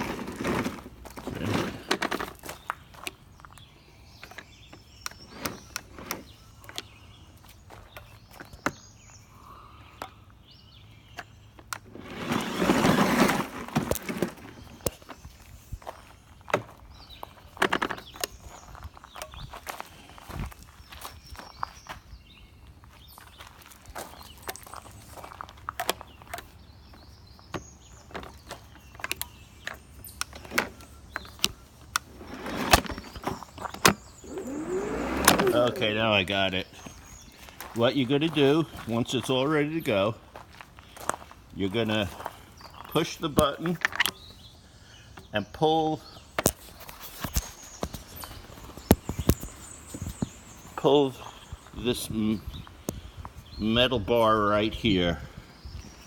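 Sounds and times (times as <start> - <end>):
lawn mower controls clicking: 28.9 - 35.9.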